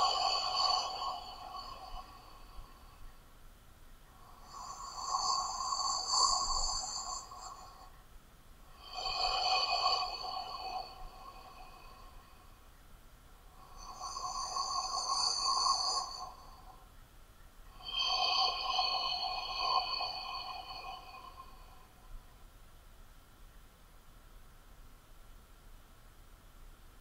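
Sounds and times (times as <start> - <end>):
person breathing through mouth: 0.0 - 3.1, 4.2 - 7.9, 8.8 - 12.6, 13.5 - 16.8, 17.7 - 22.0.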